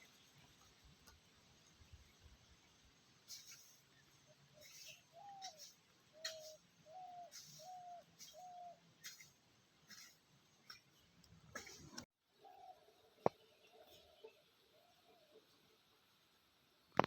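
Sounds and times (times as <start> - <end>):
bird calling faintly: 3.3 - 15.7.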